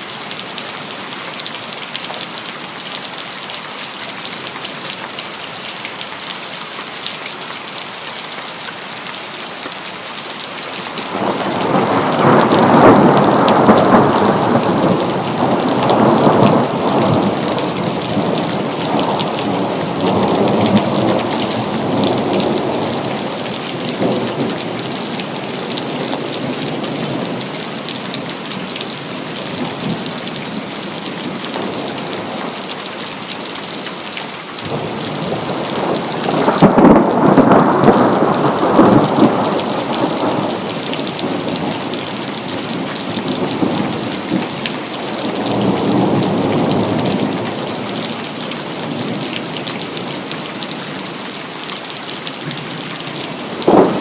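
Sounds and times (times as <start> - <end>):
steady rain: 0.0 - 54.0
thunder peal: 53.7 - 54.0.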